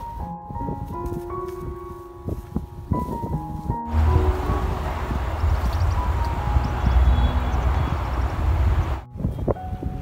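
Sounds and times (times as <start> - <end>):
background music with held notes: 0.0 - 10.0
rushing noise with low rumble: 2.4 - 10.0.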